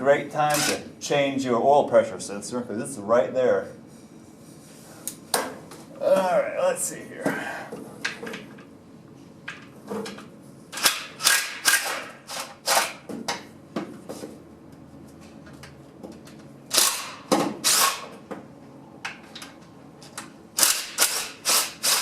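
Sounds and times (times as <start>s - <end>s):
impact wrench hammering: 20.6s - 22.0s.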